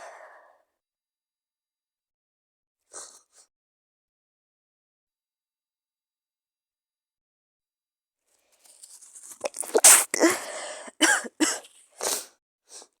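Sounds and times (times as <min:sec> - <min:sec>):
person breathing in: 0:09.4 - 0:11.0
person coughing: 0:09.5 - 0:11.7.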